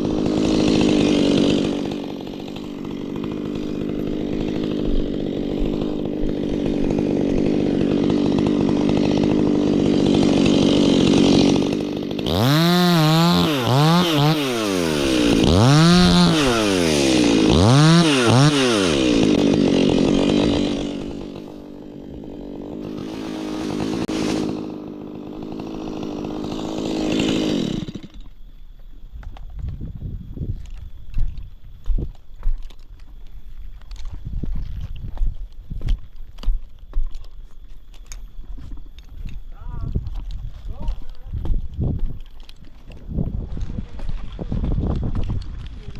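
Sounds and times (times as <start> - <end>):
chainsaw revving: 0.0 - 28.3.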